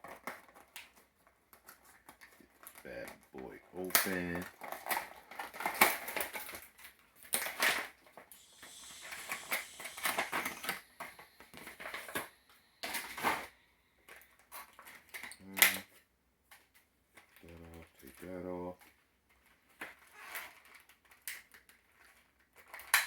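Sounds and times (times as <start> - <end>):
rustling hiss: 8.3 - 14.2.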